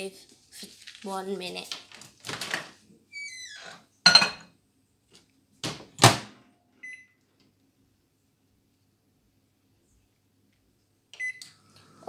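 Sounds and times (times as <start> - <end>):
microwave short beep: 6.8 - 7.2, 11.2 - 11.4.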